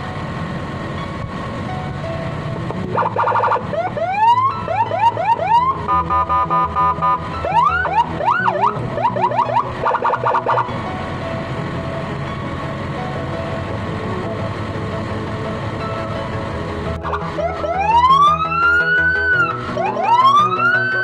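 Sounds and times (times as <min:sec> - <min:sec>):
electronic siren cycling tones: 0:02.9 - 0:10.7, 0:17.0 - 0:21.0.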